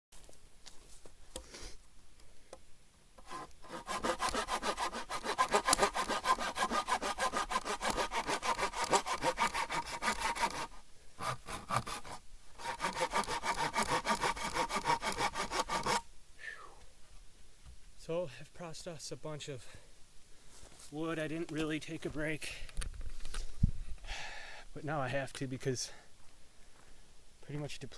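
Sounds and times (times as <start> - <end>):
hand saw cutting log: 3.2 - 16.0.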